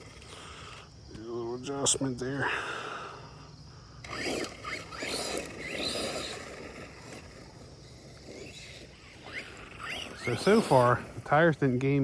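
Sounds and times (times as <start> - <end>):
electric rc truck motor whining: 0.0 - 0.8, 4.0 - 11.8.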